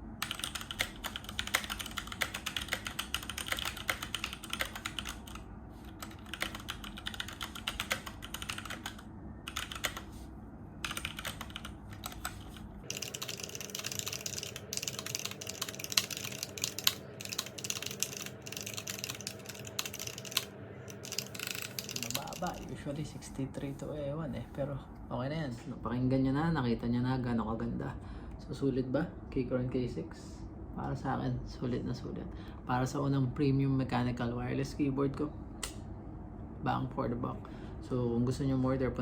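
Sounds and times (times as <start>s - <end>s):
mechanical keyboard typing: 0.2s - 10.1s, 10.8s - 22.7s.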